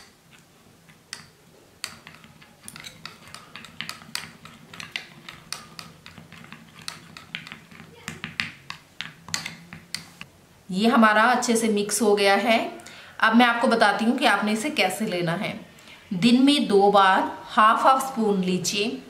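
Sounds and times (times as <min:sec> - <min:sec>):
spoon scraping a dish: 0:00.0 - 0:08.2.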